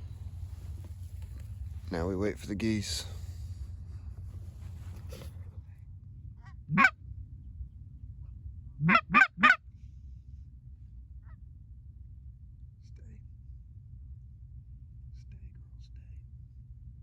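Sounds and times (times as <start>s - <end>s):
goose honking: 6.7s - 6.9s, 8.8s - 9.6s.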